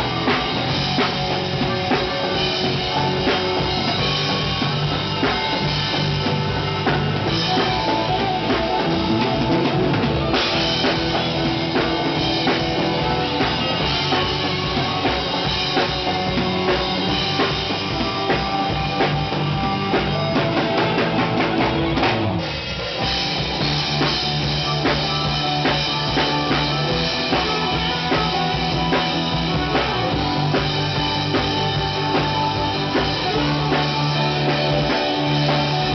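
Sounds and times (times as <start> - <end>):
rock band music: 0.0 - 35.9.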